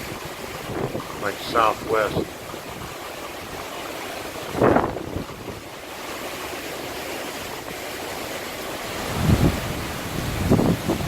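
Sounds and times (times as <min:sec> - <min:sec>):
wind buffeting microphone: 0:00.0 - 0:06.5, 0:08.8 - 0:11.0
strong gusty wind: 0:00.0 - 0:07.9, 0:08.6 - 0:11.0.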